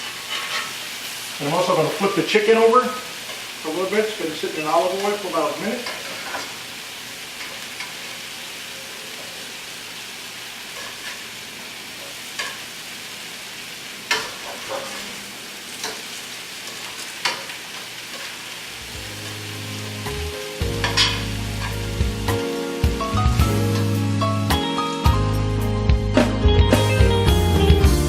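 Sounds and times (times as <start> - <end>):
chicken sizzling in a pan: 0.0 - 25.2
background music: 18.8 - 28.0.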